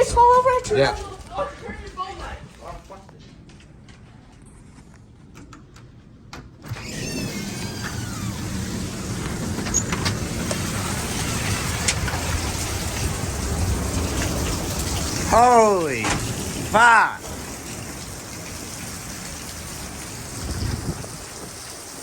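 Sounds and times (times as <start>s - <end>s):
wind roaring: 6.7s - 22.0s
heavy rain: 6.9s - 22.0s.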